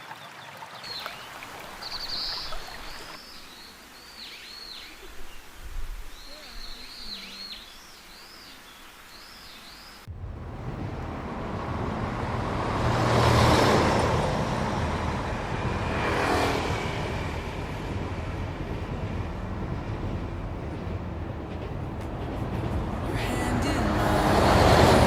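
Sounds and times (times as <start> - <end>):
traffic hum: 10.0 - 25.0
vehicles passing close: 10.0 - 25.0.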